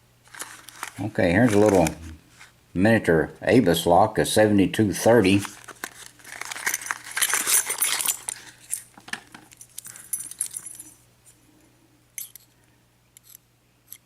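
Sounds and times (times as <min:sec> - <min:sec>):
packaging rustling and crinkling: 0:00.2 - 0:02.5, 0:05.0 - 0:10.0.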